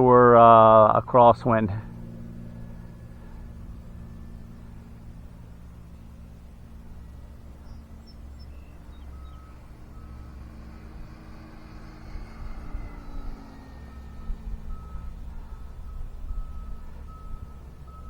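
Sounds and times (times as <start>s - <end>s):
electric motor and propeller droning: 1.8s - 18.0s.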